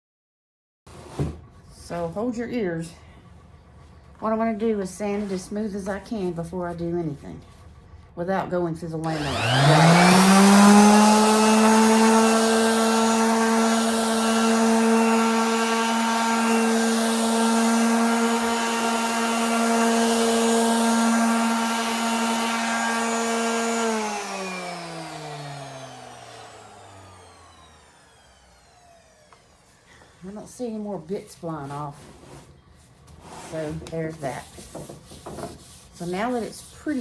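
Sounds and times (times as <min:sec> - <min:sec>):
electric sander whining: 0:09.0 - 0:30.9.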